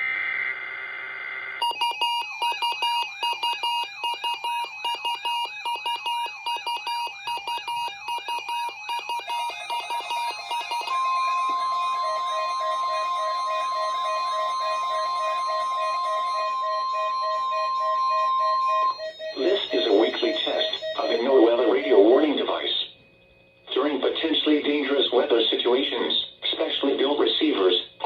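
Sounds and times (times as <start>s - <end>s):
steady alarm tone: 1.6s - 27.9s
data tones burst: 4.6s - 23.0s.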